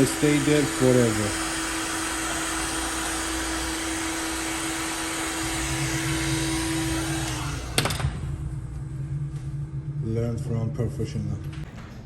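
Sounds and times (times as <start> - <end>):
heat gun airy hiss: 0.0 - 7.9.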